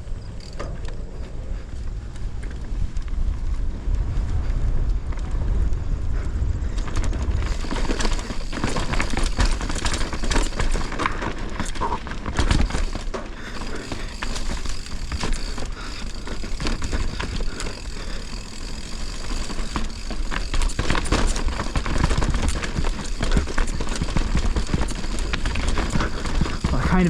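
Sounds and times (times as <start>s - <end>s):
bike tyres rattling over rocks: 0.0s - 1.2s, 6.4s - 27.0s
wind rumble on microphone: 0.0s - 12.9s.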